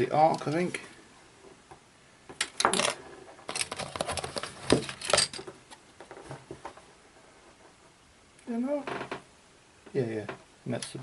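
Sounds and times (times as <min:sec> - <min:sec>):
plastic parts clicking and rattling: 0:02.4 - 0:06.2.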